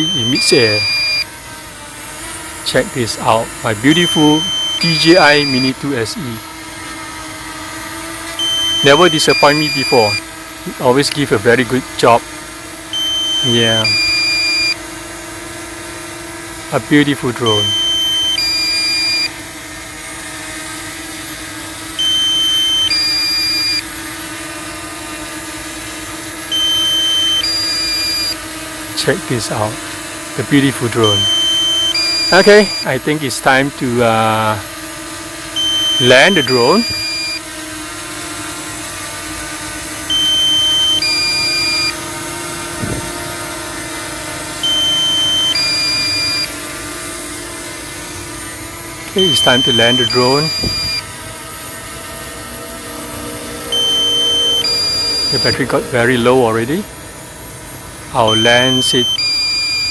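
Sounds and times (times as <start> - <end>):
two-tone warning beeps: 0.0 - 1.3, 2.7 - 6.2, 8.4 - 12.2, 13.0 - 14.8, 16.8 - 19.4, 22.0 - 23.9, 26.5 - 28.5, 30.4 - 33.6, 35.6 - 37.5, 40.1 - 43.1, 44.6 - 46.6, 49.1 - 51.1, 52.3 - 56.9, 58.2 - 59.9
drone propellers humming: 0.0 - 59.9.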